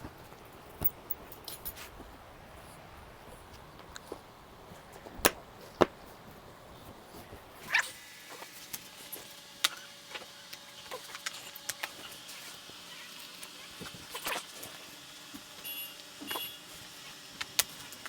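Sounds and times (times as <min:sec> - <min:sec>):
tools clicking and rattling: 0:00.8 - 0:02.0.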